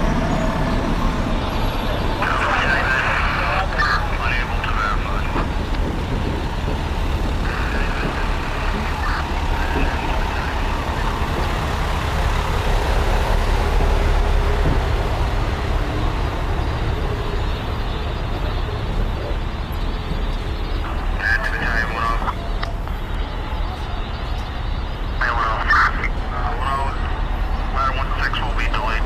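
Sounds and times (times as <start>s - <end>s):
city street noise: 0.0s - 29.0s
fire truck engine running: 0.0s - 29.0s.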